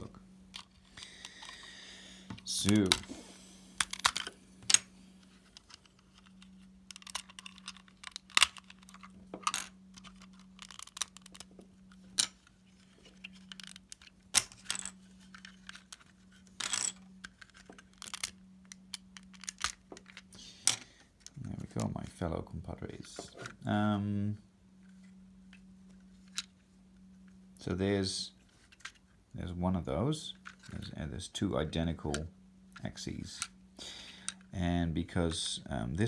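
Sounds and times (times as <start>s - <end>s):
faint low hum: 0.0s - 36.0s
plastic parts clicking and clattering: 0.5s - 3.1s, 3.8s - 22.0s.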